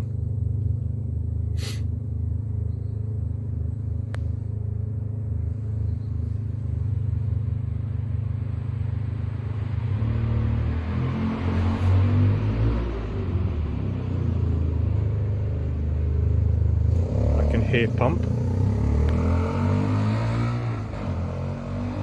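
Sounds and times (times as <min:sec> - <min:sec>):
short hiss: 0:01.5 - 0:01.9.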